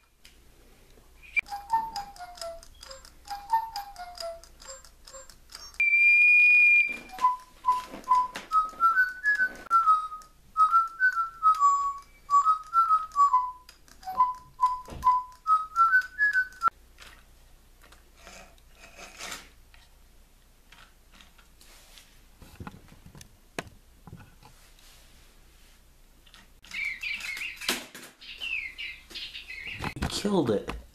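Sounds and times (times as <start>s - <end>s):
toy bird whistled melody: 1.2s - 16.7s, 26.7s - 29.8s
sharp clicks: 1.4s - 5.9s.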